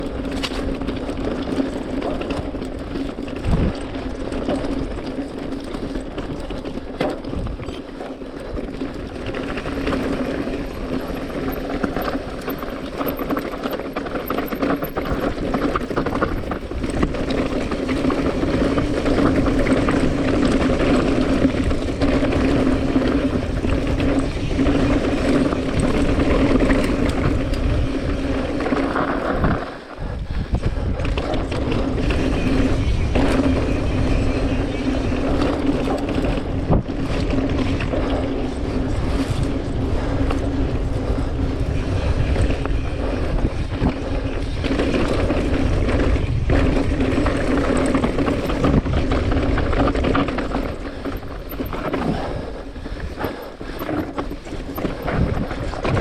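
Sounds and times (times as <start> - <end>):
wind on microphone: 0.0 - 5.0, 8.5 - 56.0
small airplane engine droning: 4.5 - 56.0.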